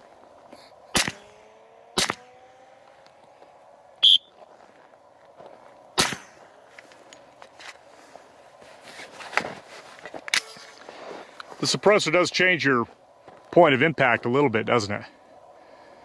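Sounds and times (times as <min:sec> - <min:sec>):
suppressed pistol shots: 0:00.9 - 0:02.6, 0:06.0 - 0:06.4.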